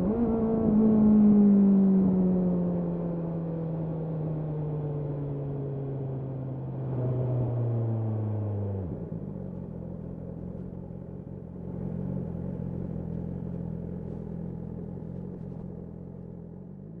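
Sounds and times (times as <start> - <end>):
motorcycle engine idling: 9.4 - 17.0.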